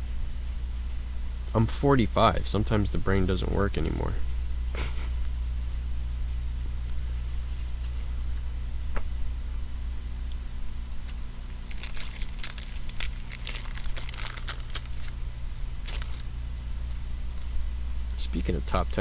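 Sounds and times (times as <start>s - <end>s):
low electrical hum: 0.0s - 19.0s
wrapper crinkling: 11.5s - 15.2s, 15.8s - 16.3s.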